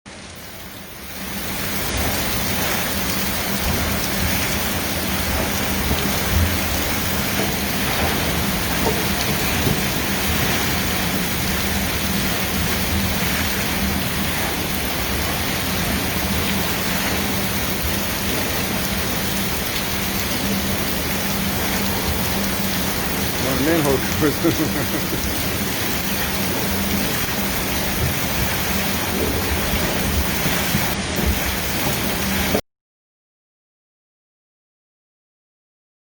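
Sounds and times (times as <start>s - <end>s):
heavy rain: 0.1s - 32.6s
water gushing from manhole: 0.1s - 32.6s.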